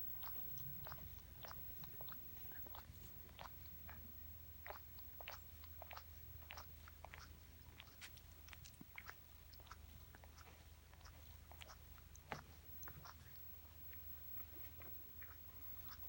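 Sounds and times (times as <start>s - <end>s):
cat licking fur: 0.0s - 16.0s
steady low hum: 0.0s - 16.0s.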